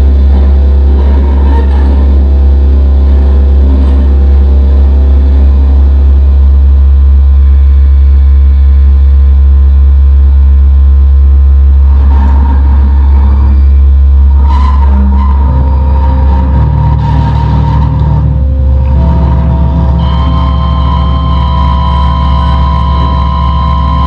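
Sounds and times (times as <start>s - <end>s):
synthesizer bass drone: 0.0s - 24.0s
higher ringing sound: 12.1s - 24.0s.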